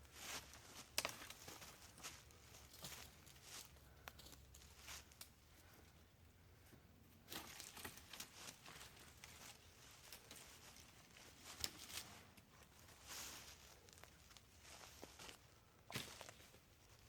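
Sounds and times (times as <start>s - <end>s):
dry leaves rustling: 0.2s - 3.8s, 7.4s - 15.4s
twigs snapping: 1.0s - 1.4s.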